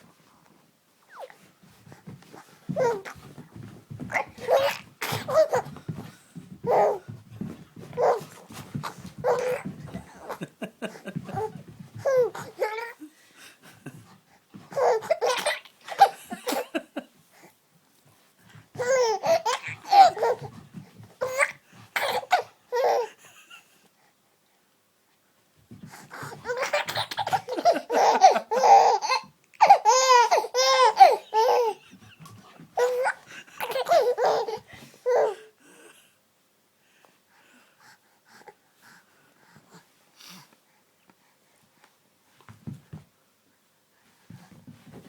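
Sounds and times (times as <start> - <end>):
baby giggling: 4.1 - 5.7, 8.0 - 13.0, 14.8 - 16.8, 18.8 - 20.5, 26.4 - 35.4.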